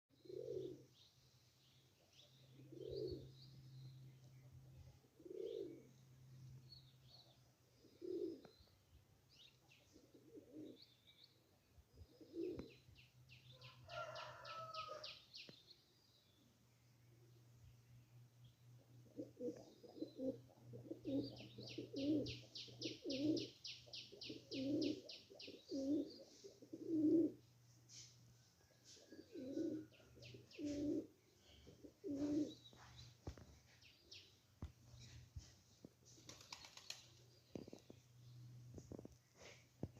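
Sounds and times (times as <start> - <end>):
dove cooing: 0.1 - 0.9, 2.5 - 3.4, 5.0 - 6.0, 7.7 - 8.5, 9.8 - 11.0, 12.0 - 12.8, 19.0 - 28.0, 28.8 - 33.0.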